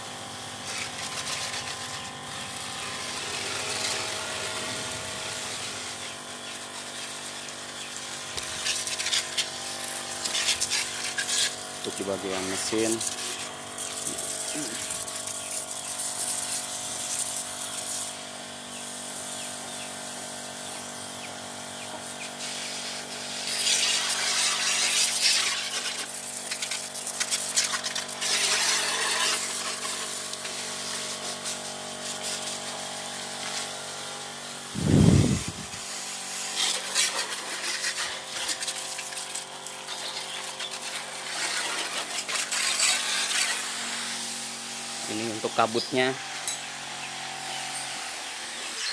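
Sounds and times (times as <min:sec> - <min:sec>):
water jet hissing: 0:00.7 - 0:18.2, 0:22.0 - 0:46.2
electric pump whining: 0:34.2 - 0:36.6.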